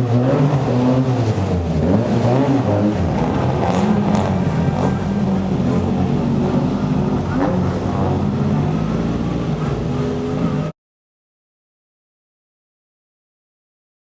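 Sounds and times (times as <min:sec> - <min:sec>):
four-cylinder engine running: 0:00.0 - 0:10.7.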